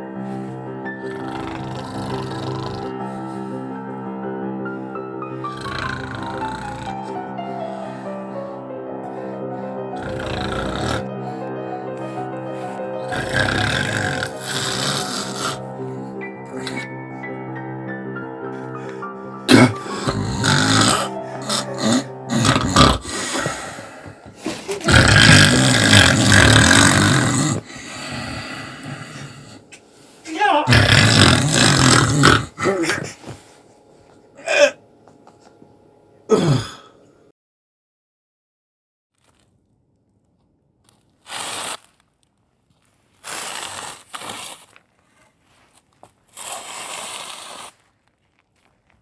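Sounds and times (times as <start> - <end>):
man snoring loudly: 0.2 - 3.6, 5.3 - 8.5, 9.9 - 17.2, 18.8 - 29.7, 30.4 - 33.2, 36.3 - 36.9.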